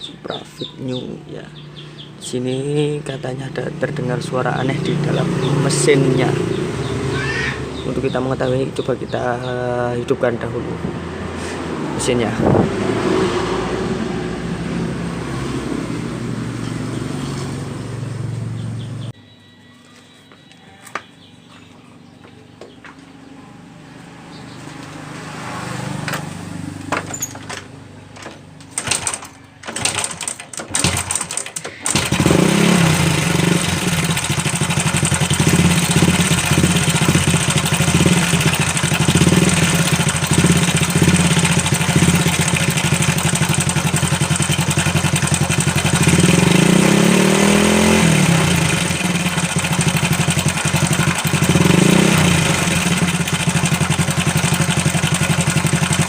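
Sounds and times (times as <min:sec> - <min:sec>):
motorcycle engine starting and idling: 0:01.6 - 0:19.2, 0:24.3 - 0:56.0
engine rattle: 0:26.9 - 0:56.0.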